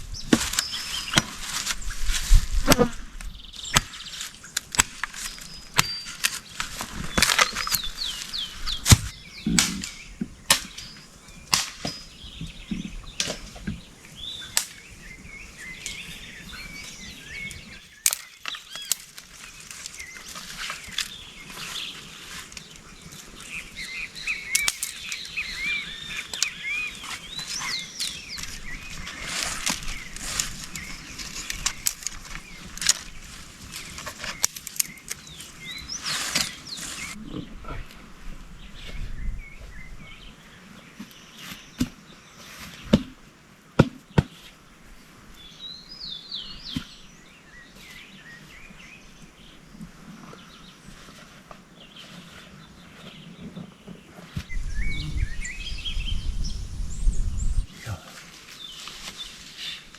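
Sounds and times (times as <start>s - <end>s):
birds chirping and singing: 0.0s - 43.1s, 45.3s - 59.9s
clicks and knocks of handled things: 3.7s - 10.8s, 18.0s - 21.2s, 24.5s - 25.4s, 26.2s - 35.5s.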